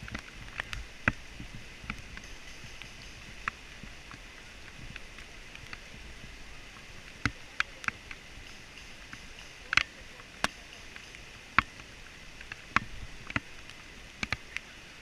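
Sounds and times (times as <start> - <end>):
sharp clicks and snaps: 0.0 - 5.9, 6.8 - 14.7
faint outdoor hiss: 0.0 - 15.0.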